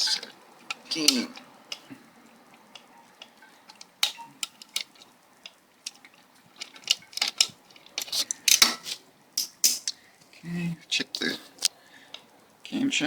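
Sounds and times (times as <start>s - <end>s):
tools and metal parts clinking: 2.7s - 10.0s.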